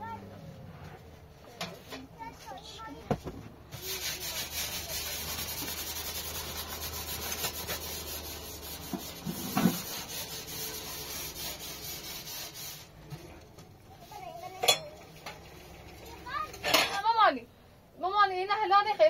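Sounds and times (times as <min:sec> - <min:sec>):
steady rubbing or scraping: 0:03.7 - 0:17.2.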